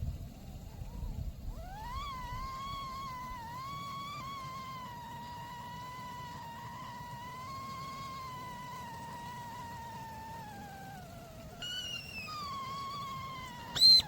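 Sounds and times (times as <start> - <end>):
kettle whistling: 0.4 - 14.0
higher kettle whistle tone: 11.6 - 14.0
loud shrill whistle: 11.6 - 14.0.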